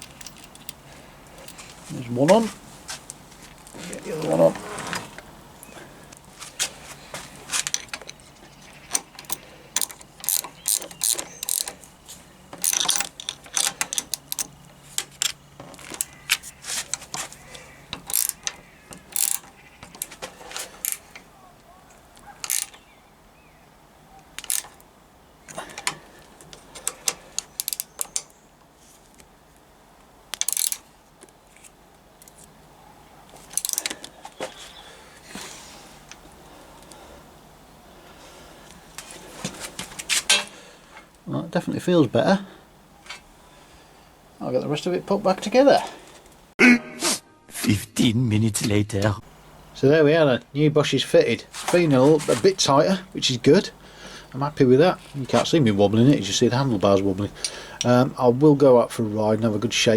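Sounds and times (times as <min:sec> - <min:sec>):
metal tools clicking and clinking: 0:00.0 - 0:00.8, 0:07.6 - 0:11.8, 0:12.5 - 0:17.0, 0:17.9 - 0:20.2, 0:22.4 - 0:22.8, 0:24.4 - 0:24.8, 0:26.8 - 0:28.3, 0:30.3 - 0:30.9, 0:33.4 - 0:34.1.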